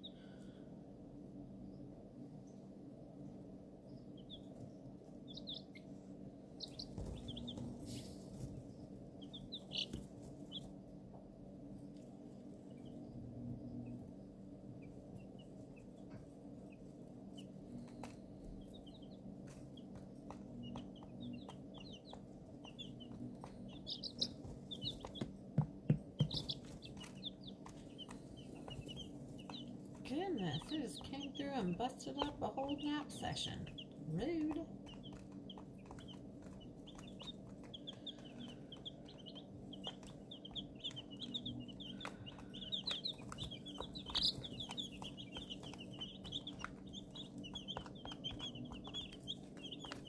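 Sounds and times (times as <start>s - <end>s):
chicks peeping: 0.0s - 50.0s
steady low hum: 0.0s - 50.0s
sharp taps: 19.8s - 31.2s, 34.3s - 50.0s.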